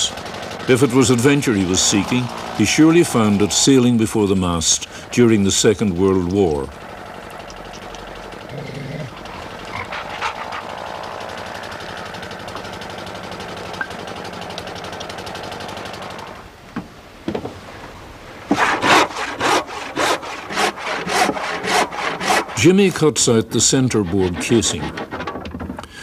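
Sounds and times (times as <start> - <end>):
hand saw cutting wood: 0.0 - 6.7, 7.3 - 11.1, 18.5 - 26.0
woodworking machine humming: 0.0 - 26.0
knocks: 16.8 - 17.6.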